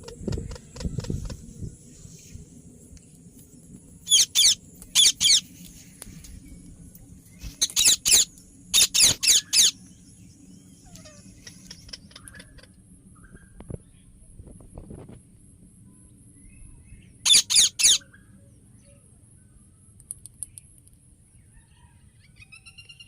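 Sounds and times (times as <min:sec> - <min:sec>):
parakeet screeching: 0:04.1 - 0:05.4, 0:07.6 - 0:09.8, 0:17.3 - 0:18.0.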